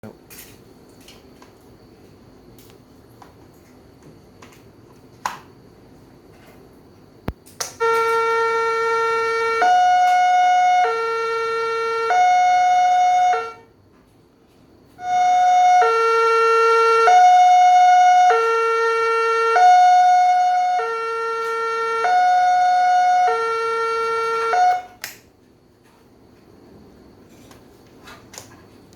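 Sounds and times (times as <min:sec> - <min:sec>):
two-tone crossing alarm: 0:07.8 - 0:13.8, 0:15.0 - 0:25.1.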